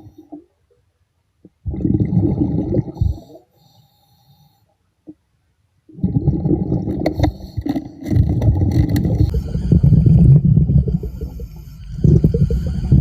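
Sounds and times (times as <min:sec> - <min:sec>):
muffled underwater rumbling and scraping: 0:06.4 - 0:13.0.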